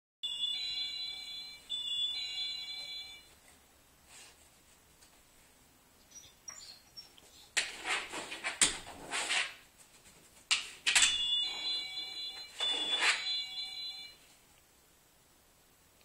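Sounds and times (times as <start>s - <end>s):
electronic doorbell chime: 0.2s - 3.3s, 11.0s - 14.3s
dog scuffing at doorbell: 10.9s - 14.3s.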